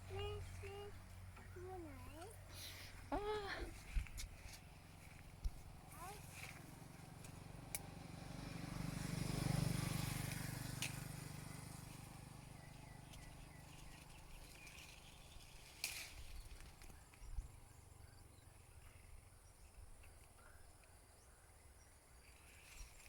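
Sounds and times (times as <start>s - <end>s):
vehicle engine: 0.0s - 19.2s
roadside outdoor ambience: 0.0s - 23.0s
short rustles and snaps: 10.3s - 11.0s, 15.6s - 17.2s.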